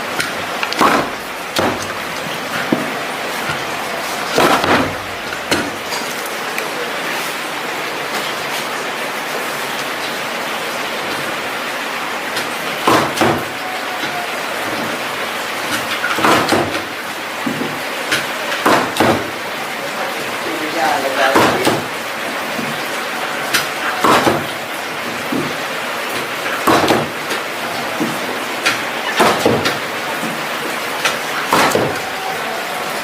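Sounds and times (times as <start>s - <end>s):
loud knocks and clanks: 0.0s - 6.1s, 12.3s - 19.4s, 21.3s - 22.8s, 23.5s - 32.3s
factory machinery running: 0.0s - 33.0s.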